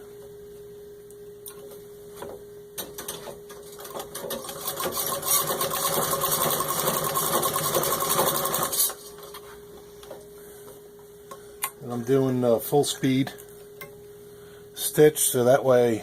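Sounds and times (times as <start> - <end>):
treadle sewing machine stitching: 4.1 - 8.9.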